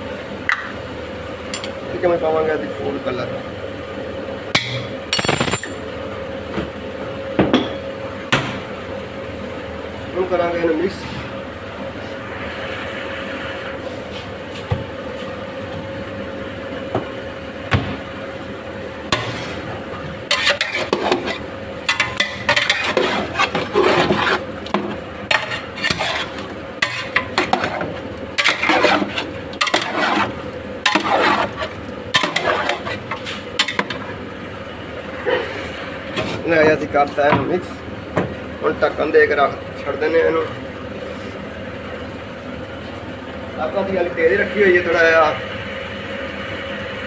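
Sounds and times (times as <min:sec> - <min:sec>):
steady background hum: 0:00.0 - 0:47.0
scraping and clattering in metal pot: 0:19.1 - 0:34.1.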